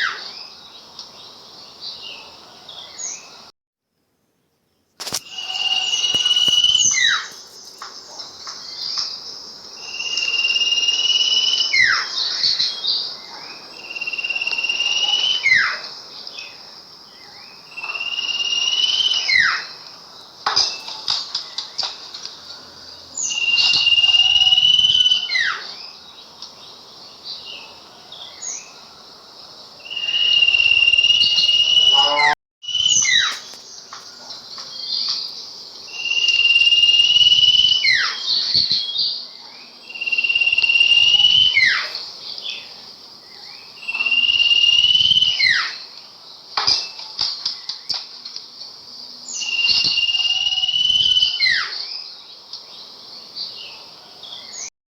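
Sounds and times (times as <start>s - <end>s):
songbird singing: 0.0s - 3.5s, 4.5s - 54.7s
high insect buzz: 5.0s - 13.0s, 28.4s - 39.2s.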